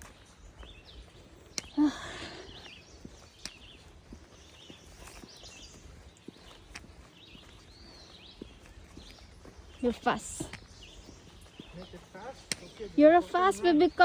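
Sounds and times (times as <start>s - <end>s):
sharp clicks: 12.4s - 12.8s.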